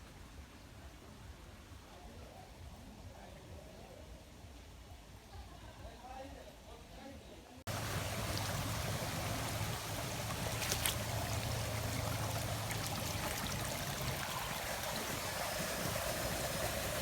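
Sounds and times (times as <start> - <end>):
faint low hum: 7.7 - 17.0
flowing water: 7.7 - 17.0.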